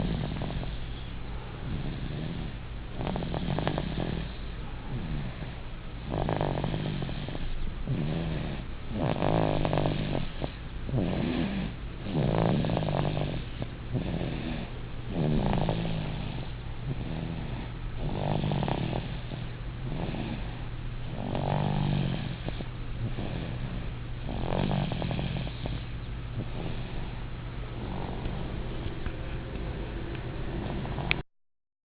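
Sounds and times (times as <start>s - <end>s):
baby snoring: 0.0s - 27.1s.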